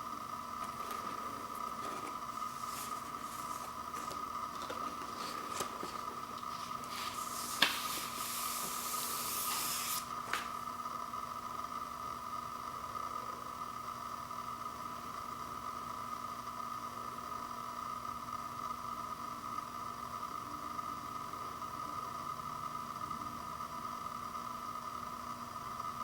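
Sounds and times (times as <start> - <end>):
high electrical whine: 0.0 - 10.8
paper or plastic rustling: 0.6 - 10.6.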